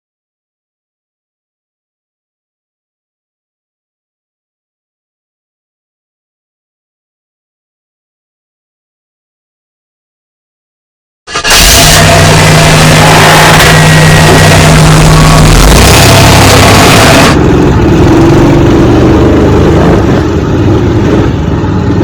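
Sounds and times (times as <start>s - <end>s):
go-kart engine humming: 11.3s - 22.0s
harsh hiss: 11.7s - 17.4s.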